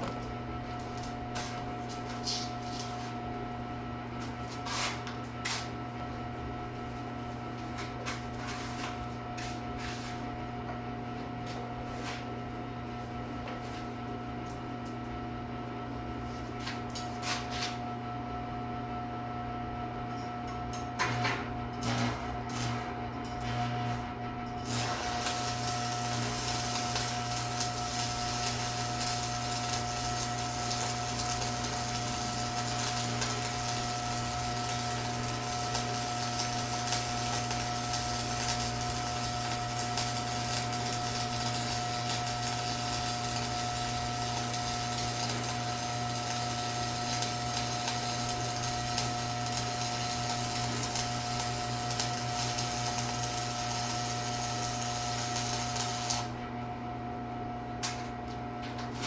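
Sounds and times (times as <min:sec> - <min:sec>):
welding machine hum: 0:00.0 - 0:10.6, 0:16.2 - 0:17.9, 0:20.1 - 0:56.7
welding arc crackling: 0:21.0 - 0:56.4.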